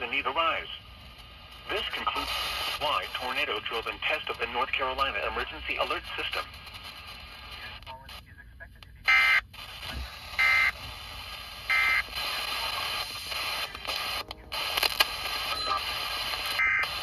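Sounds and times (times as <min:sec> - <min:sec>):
radio static: 0:00.0 - 0:17.0
buzzy data tone bursts: 0:11.7 - 0:12.1.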